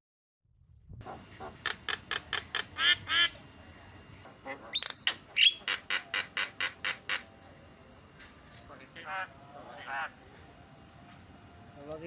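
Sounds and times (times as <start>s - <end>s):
bird calling harsh notes: 4.4s - 7.3s.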